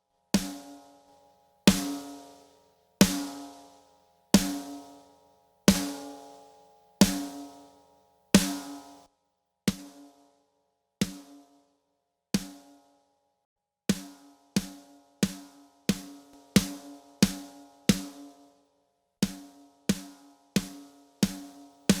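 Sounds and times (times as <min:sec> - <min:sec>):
snare drum hits: 0:20.6 - 0:22.0.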